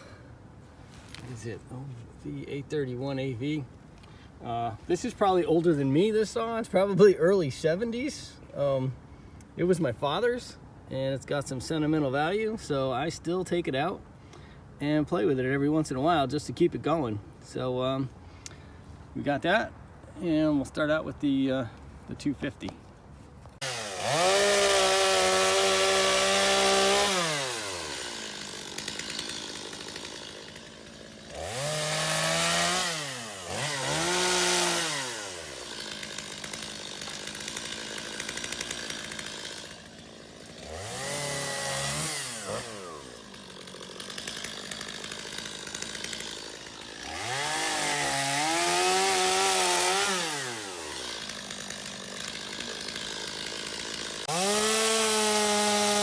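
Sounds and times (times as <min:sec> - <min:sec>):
chainsaw revving and idling: 0:23.6 - 0:56.0.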